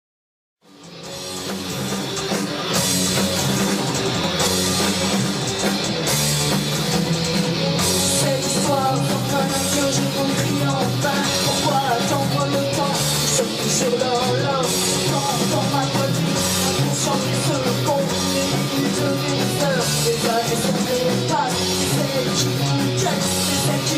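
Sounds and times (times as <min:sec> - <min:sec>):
rock music: 0:00.6 - 0:23.9
person singing: 0:07.8 - 0:23.9.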